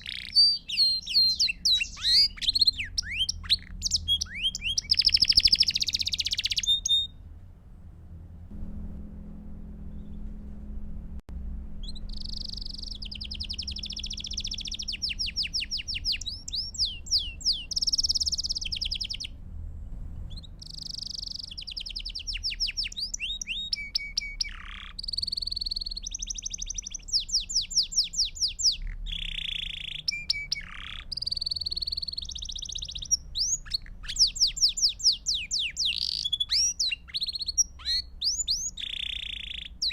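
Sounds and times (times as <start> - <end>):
canary singing trills: 0.0 - 7.2, 11.8 - 19.4, 20.3 - 39.9
steady low hum: 7.1 - 22.2.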